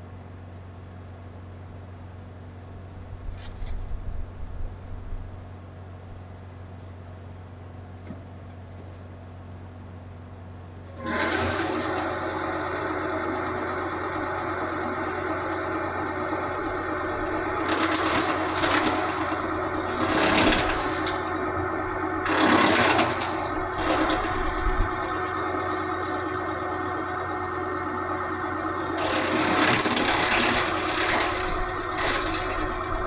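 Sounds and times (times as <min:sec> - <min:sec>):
wood chipper engine running: 0:09.7 - 0:33.0.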